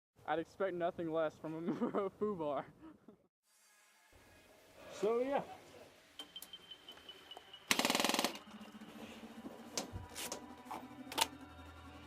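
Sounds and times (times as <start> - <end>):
airsoft gun full-auto burst: 7.7 - 8.6.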